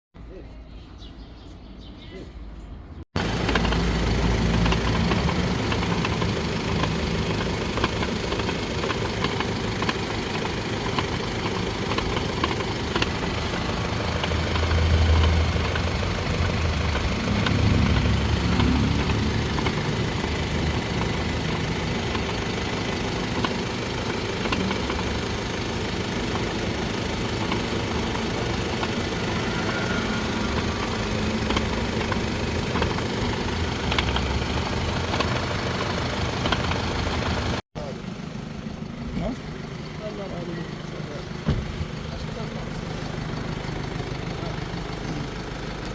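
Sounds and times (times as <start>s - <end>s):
grinding from transfer case: 3.2s - 37.6s
car driving: 3.2s - 45.9s.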